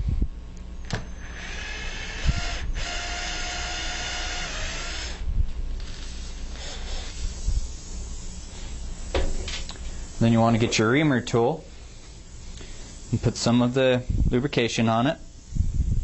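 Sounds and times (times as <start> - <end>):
power drill running: 0.9 - 5.2.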